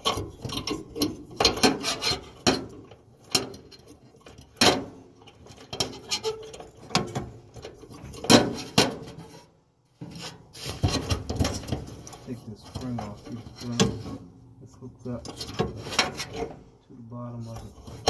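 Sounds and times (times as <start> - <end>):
metallic clicks and clanks: 0.0 - 9.4.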